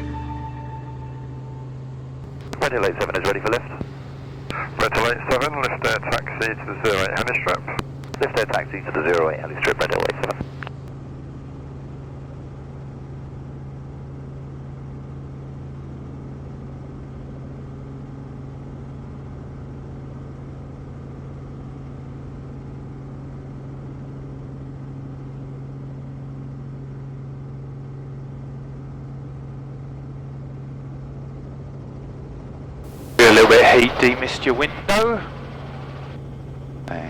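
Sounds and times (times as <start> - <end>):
helicopter engine and rotors drone: 1.3 - 20.3, 29.8 - 37.0.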